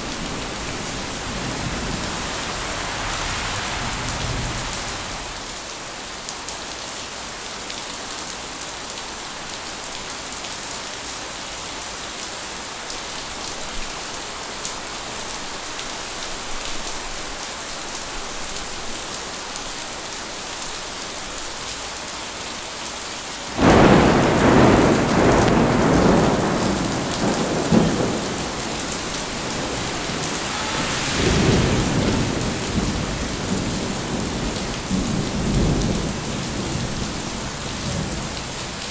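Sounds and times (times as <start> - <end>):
thunderclap and rumbling: 0.0 - 5.4, 23.6 - 38.6
steady rain falling: 0.0 - 38.9.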